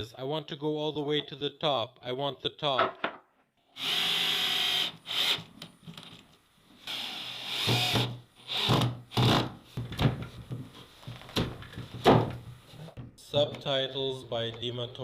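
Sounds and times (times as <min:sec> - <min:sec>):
power tool on wood: 0:06.9 - 0:09.4.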